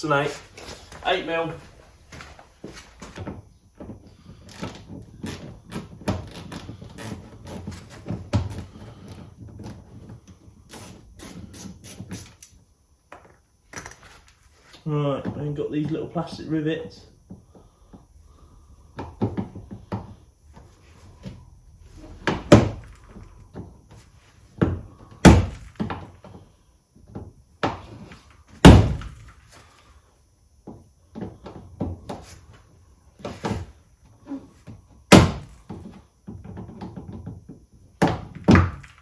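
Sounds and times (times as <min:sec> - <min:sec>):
loud sharp knocks: 0:25.2 - 0:25.8, 0:28.6 - 0:29.2, 0:35.1 - 0:35.6.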